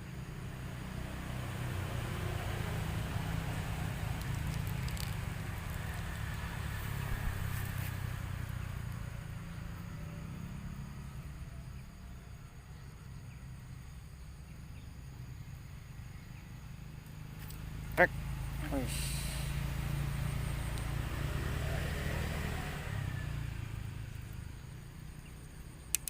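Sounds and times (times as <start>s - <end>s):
vehicle engine rumble: 0.0s - 26.0s
faint clicks: 25.8s - 26.0s.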